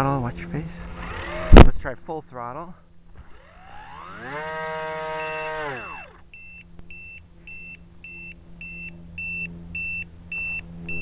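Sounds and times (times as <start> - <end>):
electric motor whine: 0.7 - 1.7, 3.1 - 6.4.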